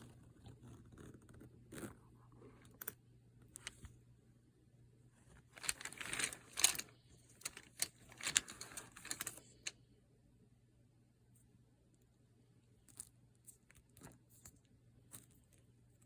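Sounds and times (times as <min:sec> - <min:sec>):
pencils rattling and clicking: 0:05.6 - 0:09.7.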